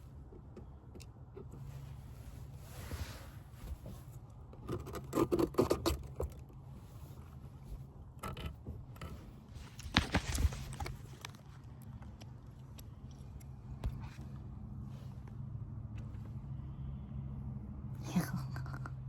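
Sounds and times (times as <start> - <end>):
clicks and scrapes: 4.6 - 6.4
steady low hum: 6.6 - 19.0.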